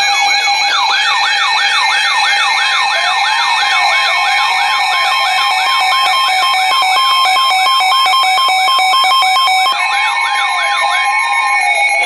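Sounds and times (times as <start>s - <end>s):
electronic siren sweeping: 0.0s - 12.0s
steady beeping tones: 0.0s - 12.0s.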